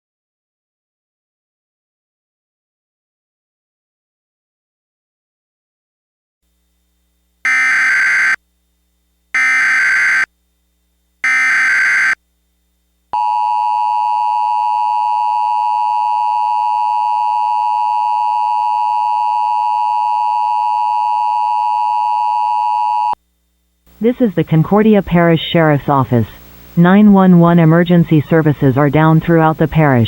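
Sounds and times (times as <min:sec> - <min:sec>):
digital data tone bursts: 0:07.5 - 0:08.4, 0:09.4 - 0:10.3, 0:11.2 - 0:12.2
two-tone alert signal: 0:07.5 - 0:08.4, 0:09.4 - 0:10.3, 0:11.2 - 0:12.2.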